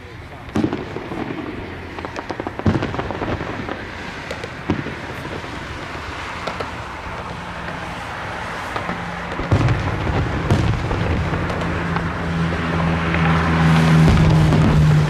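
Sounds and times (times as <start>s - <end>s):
fireworks banging: 0.0s - 15.0s
light firework pops: 0.3s - 15.0s.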